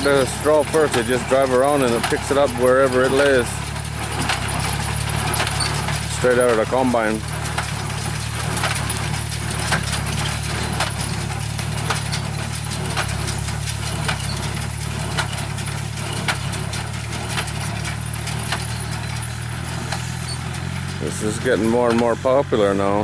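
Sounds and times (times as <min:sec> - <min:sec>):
engine drone: 0:00.0 - 0:23.0.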